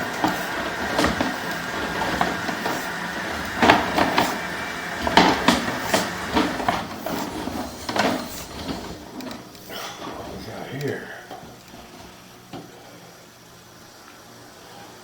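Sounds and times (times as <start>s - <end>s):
cable clattering in drain: 0.0s - 10.2s
steady mechanical hum: 0.0s - 15.0s.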